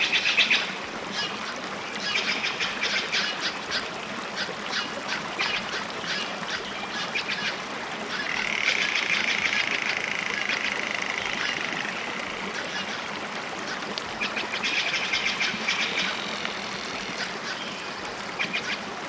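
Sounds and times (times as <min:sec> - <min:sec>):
animal chattering calls: 0:08.2 - 0:12.0.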